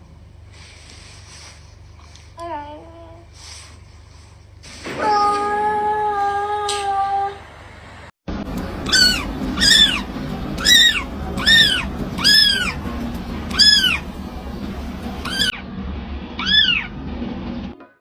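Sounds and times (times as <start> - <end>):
held steady note: 8.3 - 15.5
kitten mewing: 8.8 - 12.8, 13.5 - 14.1, 15.2 - 15.5.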